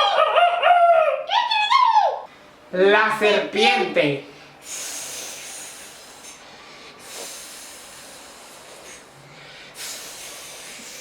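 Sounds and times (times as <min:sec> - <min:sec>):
person hissing like a snake: 0:04.6 - 0:06.4, 0:07.0 - 0:09.2, 0:09.8 - 0:11.0.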